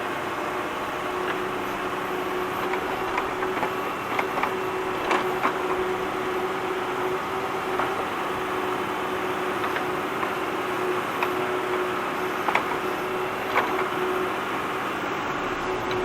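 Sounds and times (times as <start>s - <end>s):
tractor engine under load: 0.0s - 16.0s
digging gear clanking: 1.0s - 11.6s.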